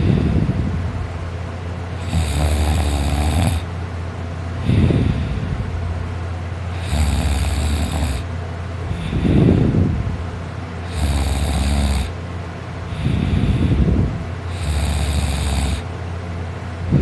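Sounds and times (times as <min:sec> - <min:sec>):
breath sound: 0:00.0 - 0:00.7, 0:04.6 - 0:05.7, 0:06.7 - 0:09.9, 0:12.9 - 0:15.9
man snoring loudly: 0:02.0 - 0:03.7, 0:06.7 - 0:08.3, 0:10.8 - 0:12.2, 0:14.5 - 0:15.9.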